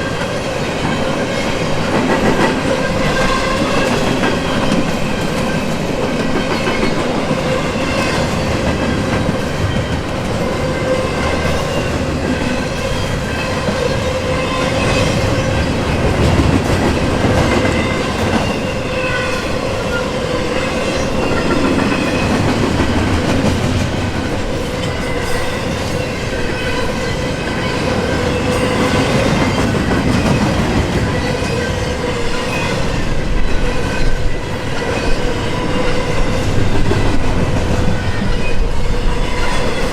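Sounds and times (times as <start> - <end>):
ringing whine of wheels on rails: 0.0 - 39.9
train wheels clacking over rail joints: 0.8 - 19.6, 21.0 - 33.0.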